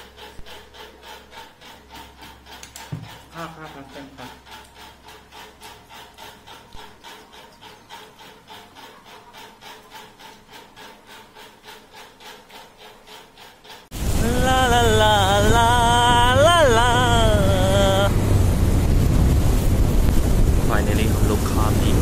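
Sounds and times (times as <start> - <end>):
rapid rasping strokes: 0.0 - 22.0
pitched voice: 14.2 - 18.1.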